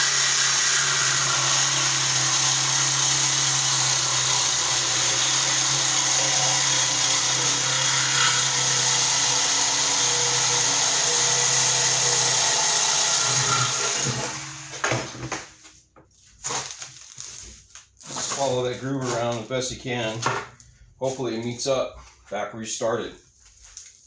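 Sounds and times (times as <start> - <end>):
reciprocating saw cutting metal: 0.0 - 14.8.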